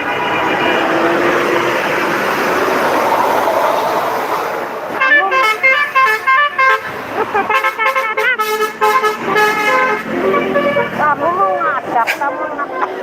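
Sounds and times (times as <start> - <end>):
multi-tone bus horn tune: 0.0 - 2.0, 4.9 - 13.0
bus engine and road noise: 0.0 - 13.0.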